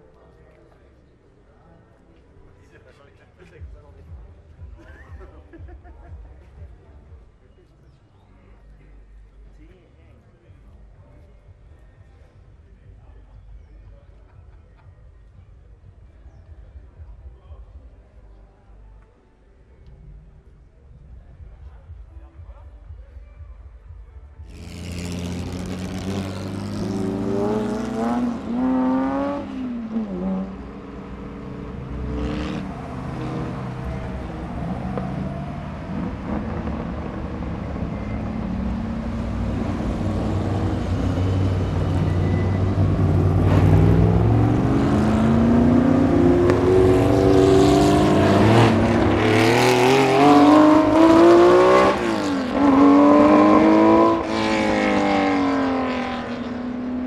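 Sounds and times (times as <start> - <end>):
racing engine accelerating: 24.5 - 57.0.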